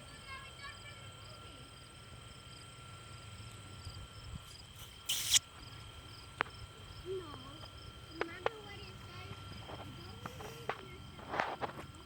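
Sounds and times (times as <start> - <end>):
insects chirping: 0.0 - 12.0
sharp click: 5.1 - 5.4.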